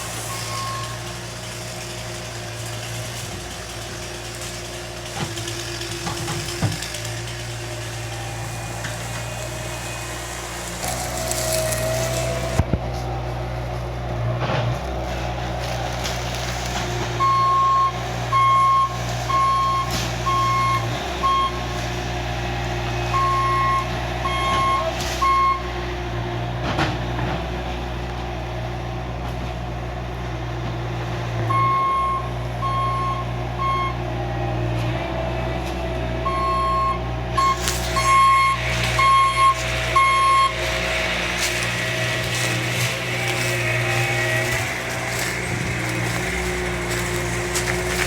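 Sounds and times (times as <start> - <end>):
heavy engine running: 0.0 - 48.0
reversing alarm beeps: 0.3 - 1.0, 17.2 - 21.6, 23.1 - 25.6, 31.5 - 34.0, 36.2 - 40.6.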